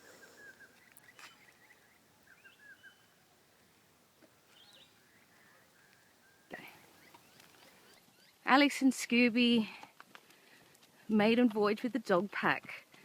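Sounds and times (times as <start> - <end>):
faint bird chirps: 0.0 - 3.4, 4.3 - 8.5.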